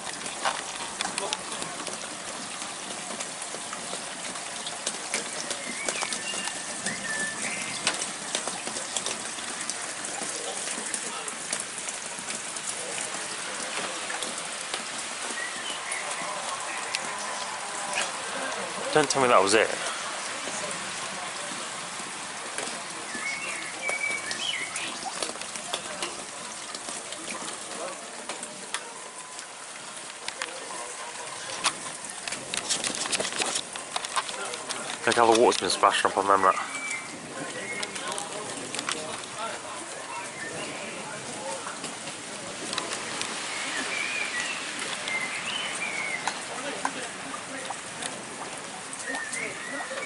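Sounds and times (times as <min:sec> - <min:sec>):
sharp drip ticks: 0:00.0 - 0:17.4
sharp drips: 0:00.0 - 0:50.0
steady rain falling: 0:00.0 - 0:50.0
bird chirping: 0:05.3 - 0:07.9, 0:23.1 - 0:25.1, 0:43.4 - 0:46.4.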